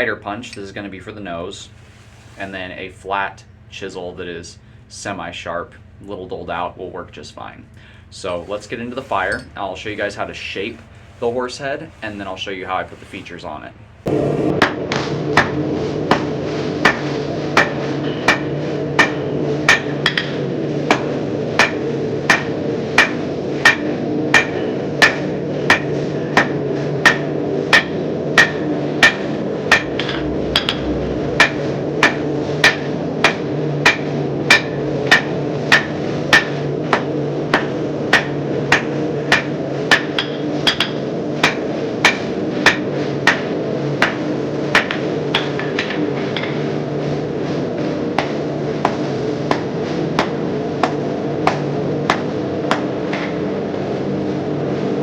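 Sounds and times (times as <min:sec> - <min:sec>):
steady hum: 0:00.0 - 0:55.0
hammer striking steel on anvil: 0:14.1 - 0:46.7, 0:48.1 - 0:53.8.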